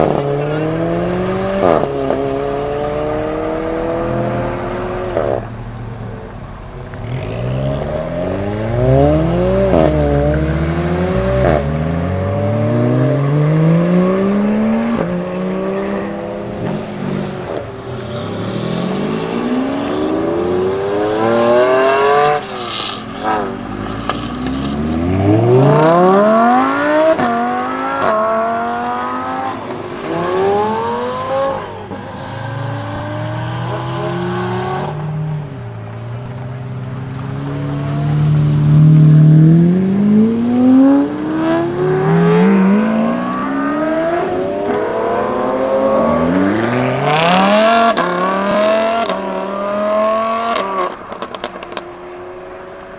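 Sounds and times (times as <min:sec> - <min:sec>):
supercar engines accelerating: 0:00.0 - 0:52.9.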